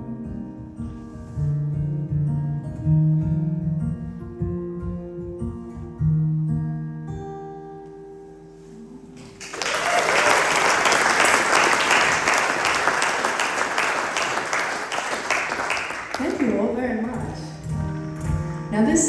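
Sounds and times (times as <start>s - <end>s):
audience applause: 9.3s - 16.7s
acoustic guitar chord ringing: 11.1s - 19.0s.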